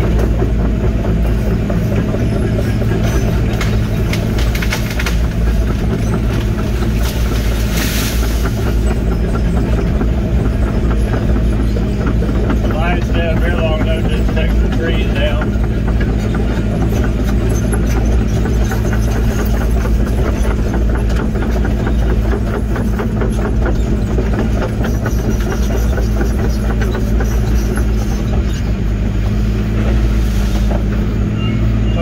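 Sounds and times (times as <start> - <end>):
excavator diesel engine running: 0.0 - 32.0
trees snapping and cracking: 3.5 - 5.4, 6.3 - 8.6.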